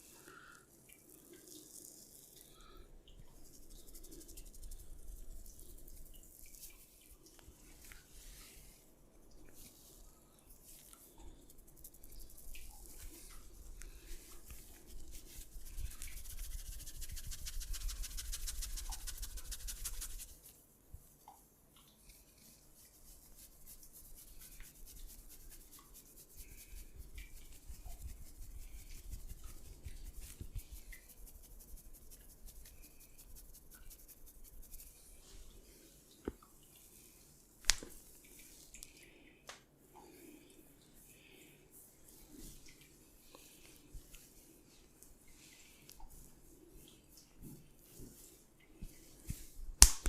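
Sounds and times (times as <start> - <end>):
hands rubbing skin and hair: 3.4 - 8.8, 9.5 - 20.6, 22.1 - 35.8, 37.0 - 38.9, 45.8 - 50.0.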